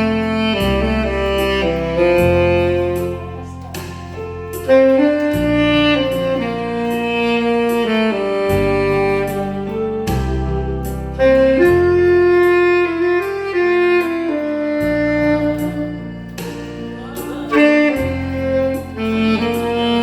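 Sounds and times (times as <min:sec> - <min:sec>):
bass line: 0:00.0 - 0:20.0
saxophone ballad melody: 0:00.0 - 0:20.0.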